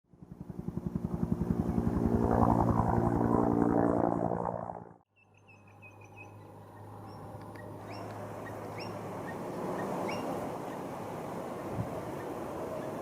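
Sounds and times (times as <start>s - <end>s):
helicopter rotor and turbine: 0.1s - 5.1s, 5.8s - 13.0s
birds chirping: 5.1s - 13.0s.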